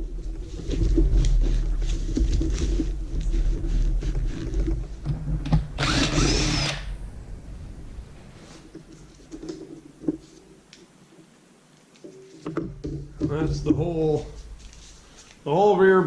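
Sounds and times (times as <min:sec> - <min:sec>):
power drill whining: 0:05.6 - 0:07.0.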